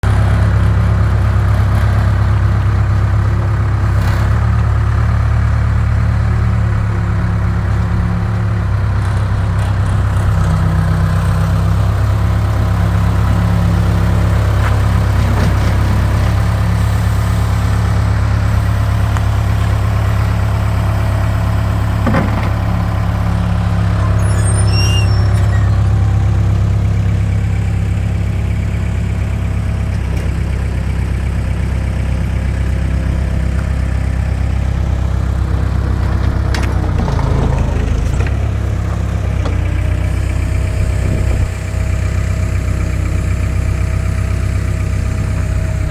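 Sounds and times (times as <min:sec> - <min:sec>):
diesel engine idling: 0:00.0 - 0:45.9.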